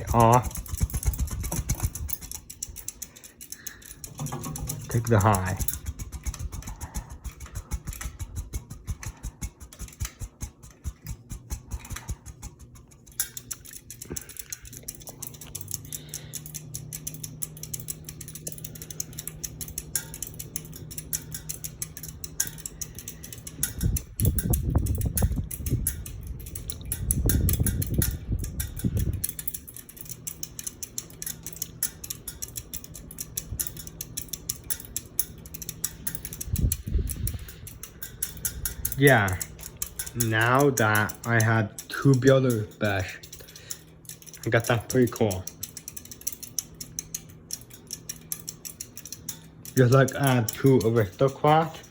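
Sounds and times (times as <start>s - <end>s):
ceiling fan ticking and humming: 0.0s - 51.9s.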